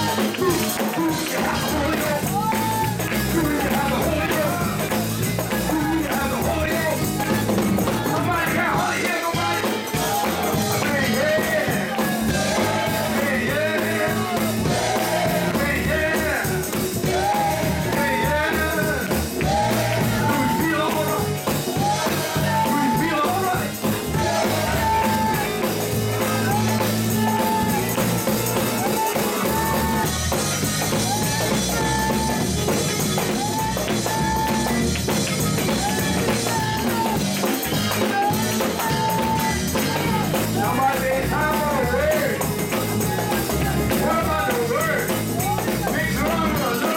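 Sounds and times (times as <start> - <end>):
live band with drum kit: 0.0 - 46.9
voices singing: 0.0 - 46.9.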